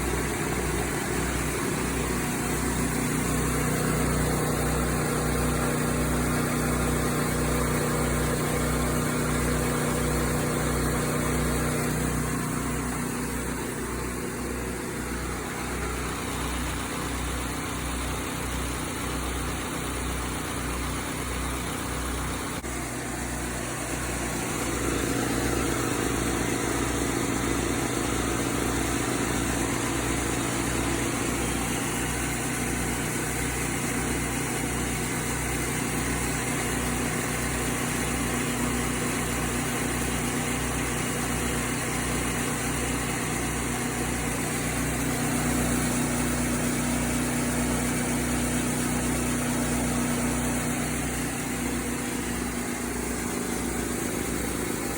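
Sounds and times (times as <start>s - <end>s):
air compressor running: 0.0s - 54.9s.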